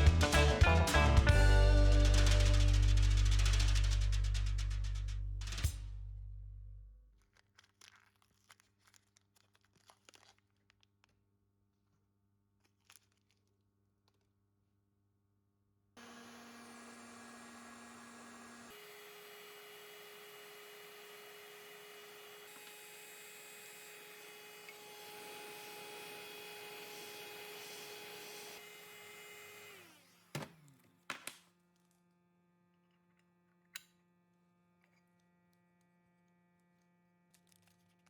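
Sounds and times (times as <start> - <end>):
small machine motor humming: 16.0 - 30.8.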